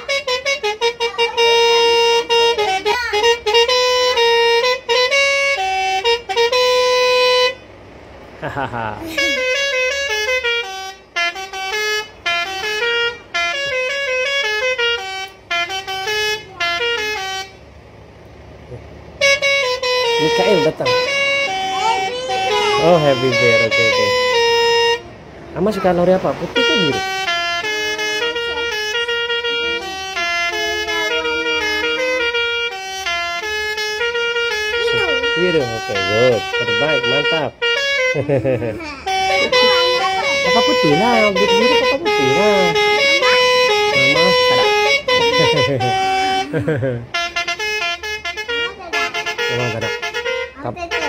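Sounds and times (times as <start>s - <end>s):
musical air horn tune: 0.0s - 7.8s, 9.0s - 17.7s, 19.2s - 51.0s.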